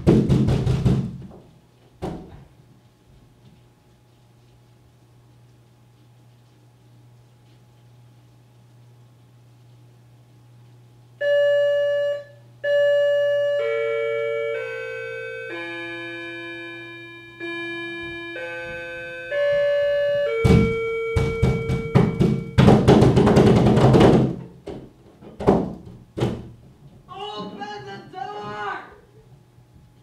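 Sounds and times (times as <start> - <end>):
loud pounding on door: 0.0 - 1.4, 19.4 - 26.6
electronic doorbell chime tune: 11.2 - 22.6.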